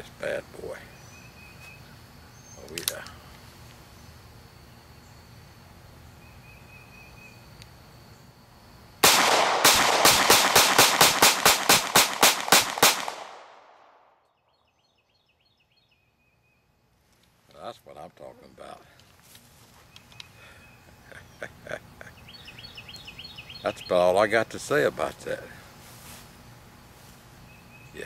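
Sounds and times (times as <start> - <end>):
pistol fired rapidly: 9.0 - 13.6.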